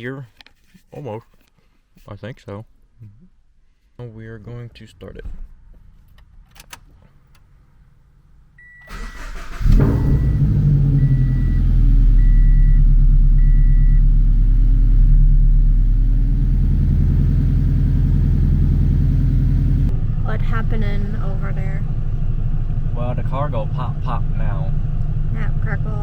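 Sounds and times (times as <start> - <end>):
car engine starting and running: 8.6 - 26.0.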